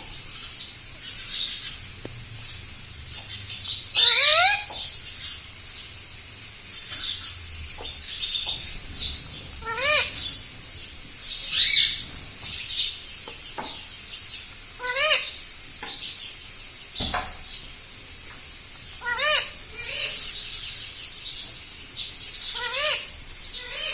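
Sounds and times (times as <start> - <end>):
parakeet chirps and squawks: 3.2 - 5.4, 6.8 - 13.0, 14.8 - 15.4, 19.0 - 21.1, 22.2 - 23.9
parakeet rising-and-falling call: 3.9 - 4.7, 9.6 - 10.4, 19.0 - 20.4.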